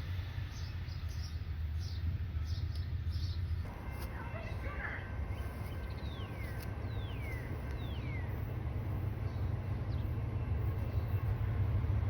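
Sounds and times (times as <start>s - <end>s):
approaching train rumble: 0.0s - 12.0s
bird whistling: 5.3s - 8.3s.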